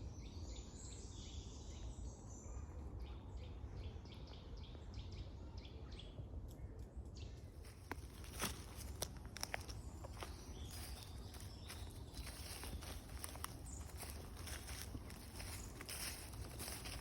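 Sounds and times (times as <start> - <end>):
steady low rumble: 6.9 - 17.0
footsteps crackling on woodland floor: 7.6 - 17.0.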